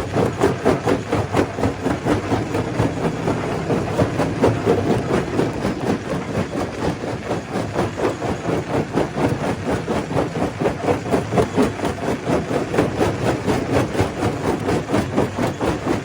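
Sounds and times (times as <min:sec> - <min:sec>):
machine drone: 0:00.0 - 0:16.0.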